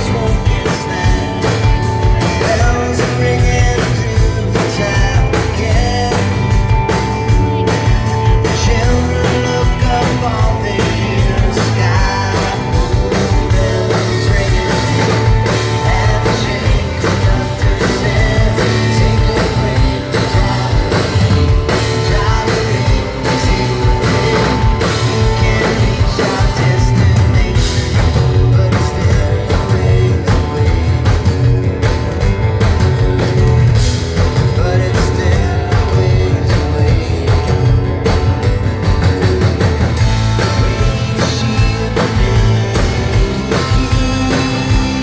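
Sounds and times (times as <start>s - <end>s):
person singing: 0.0s - 6.7s, 7.6s - 31.3s, 34.2s - 38.0s, 40.5s - 45.0s
live rock band playing: 0.0s - 45.0s.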